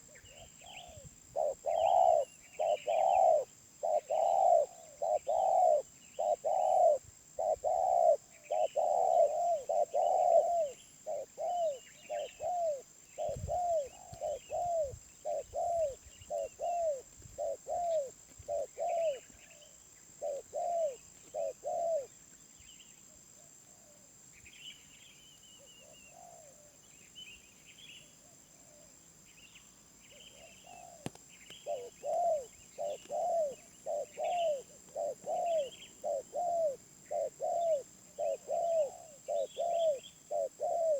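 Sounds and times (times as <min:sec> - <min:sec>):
dove cooing: 0:00.0 - 0:19.6, 0:20.2 - 0:22.2, 0:30.2 - 0:40.9
small birds chirping: 0:00.0 - 0:40.9.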